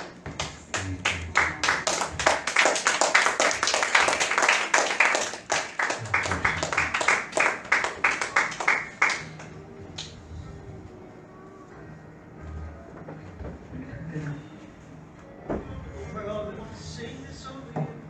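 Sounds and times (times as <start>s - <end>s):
hands clapping fast: 0.0s - 10.2s.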